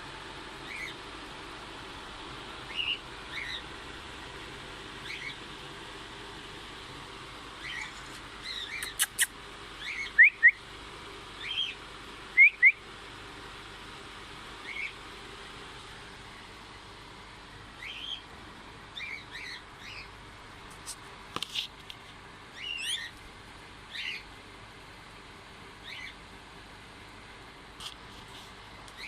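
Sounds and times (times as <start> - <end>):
parrots chirping: 0.6 - 1.0, 2.7 - 3.6, 5.0 - 5.4, 7.6 - 10.6, 11.4 - 11.8, 14.6 - 15.0, 17.8 - 18.2, 18.9 - 20.1, 22.6 - 23.2, 23.9 - 24.3, 25.8 - 26.2.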